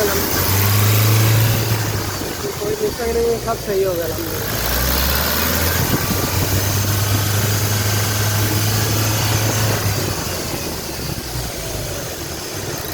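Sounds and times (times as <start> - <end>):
diesel engine idling: 0.0 - 12.9.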